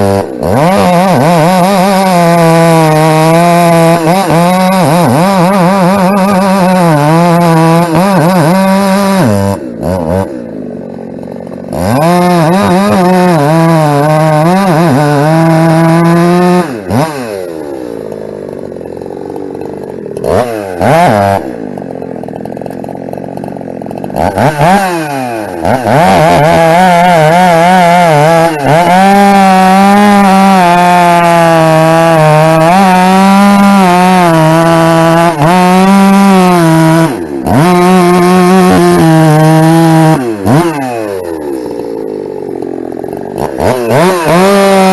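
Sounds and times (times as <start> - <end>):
chainsaw cutting wood: 0.0 - 44.9
chainsaw idling with throttle blips: 0.0 - 44.9.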